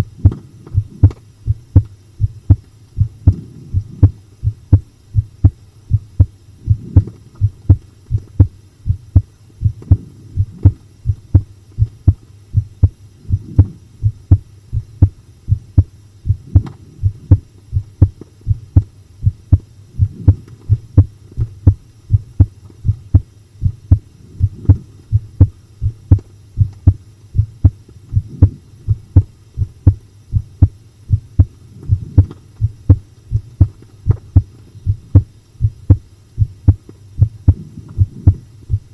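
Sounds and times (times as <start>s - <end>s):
heartbeat thumping: 0.0s - 38.9s.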